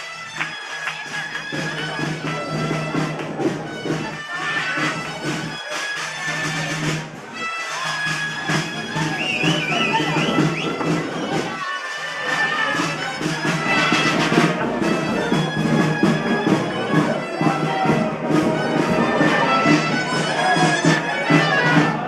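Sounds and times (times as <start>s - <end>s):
regular drum beat: 1.1s - 7.3s, 12.8s - 22.0s
bagpipe melody over drone: 7.3s - 22.0s.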